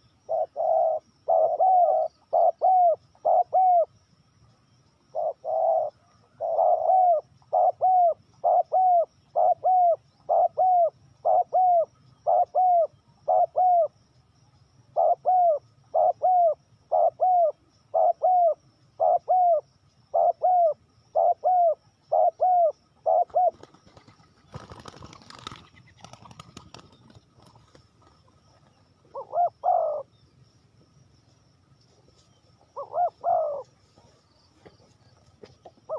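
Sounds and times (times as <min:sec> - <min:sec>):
dove cooing: 0:00.0 - 0:03.9, 0:05.1 - 0:14.0, 0:14.9 - 0:26.9, 0:29.0 - 0:30.2, 0:32.6 - 0:34.2, 0:35.5 - 0:35.9
rustle: 0:00.0 - 0:35.9.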